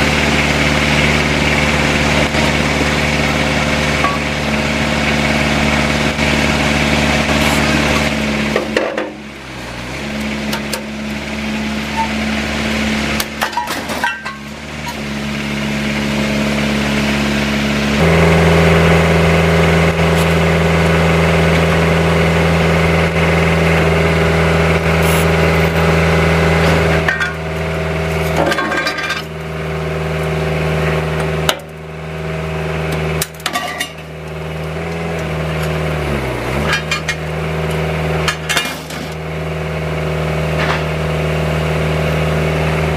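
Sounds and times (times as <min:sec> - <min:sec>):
excavator diesel engine running: 0:00.0 - 0:42.9
metal shear clanking and cracking: 0:13.2 - 0:15.0, 0:36.6 - 0:37.2.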